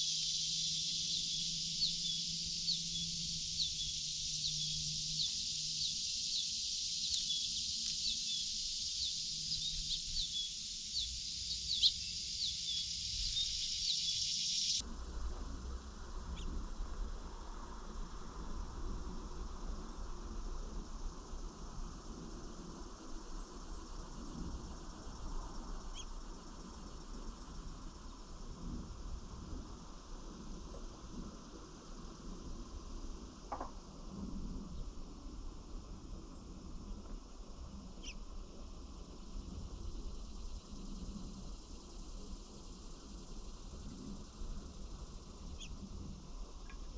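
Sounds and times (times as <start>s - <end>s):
bird chirping: 0.0s - 14.8s, 38.0s - 38.2s
insects chorus: 0.0s - 46.9s.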